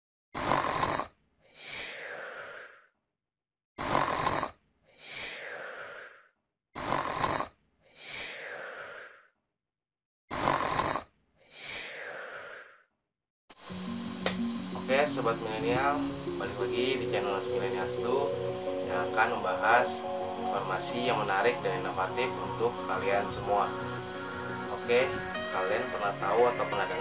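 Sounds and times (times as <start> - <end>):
person snoring: 4.0 - 9.3.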